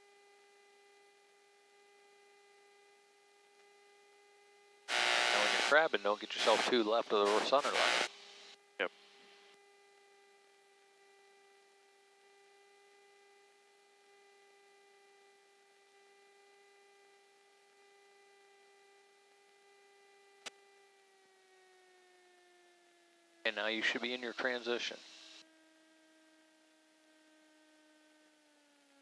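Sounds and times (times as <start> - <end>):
aircraft engine drone: 4.9 - 8.1.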